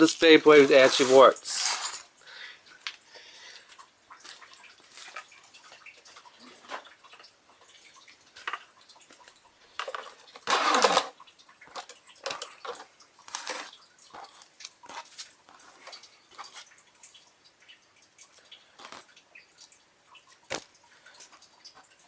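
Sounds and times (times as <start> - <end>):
plastic parts clicking: 9.8 - 13.7.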